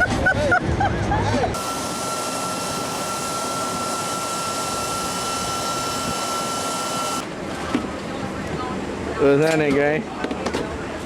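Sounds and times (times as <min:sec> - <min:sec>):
high whine: 0:01.6 - 0:07.3
rushing machine noise: 0:01.6 - 0:07.3.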